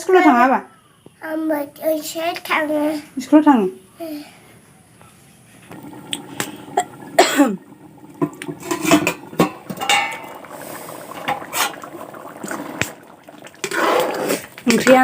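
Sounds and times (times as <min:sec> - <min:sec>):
dishes and utensils clinking: 0:08.5 - 0:10.3.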